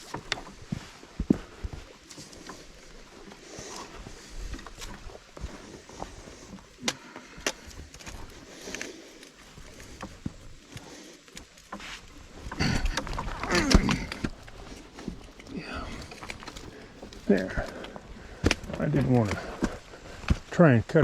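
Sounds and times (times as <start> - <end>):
footsteps crunching over rock and leaves: 0.0 - 20.5
twigs snapping: 12.5 - 18.8.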